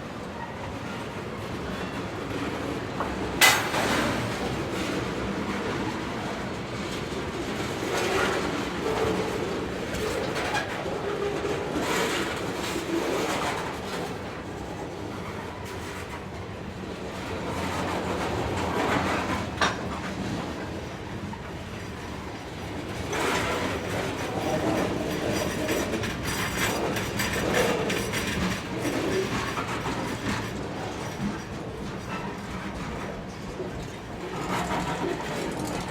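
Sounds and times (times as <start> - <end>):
rumble of rolling train wagons: 0.0 - 35.9
wheel clacks over rail joints: 3.0 - 5.8, 17.6 - 22.2, 22.9 - 35.9.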